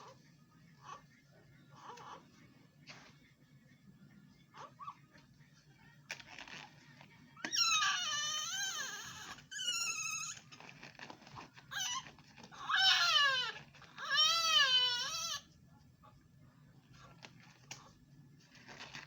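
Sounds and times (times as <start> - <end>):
newborn baby crying: 12.6 - 15.4.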